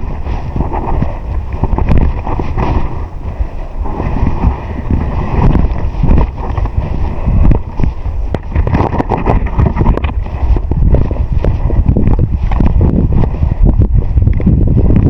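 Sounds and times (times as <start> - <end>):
wind buffeting microphone: 0.0 - 15.0
sharp clicks and knocks: 8.3 - 13.3.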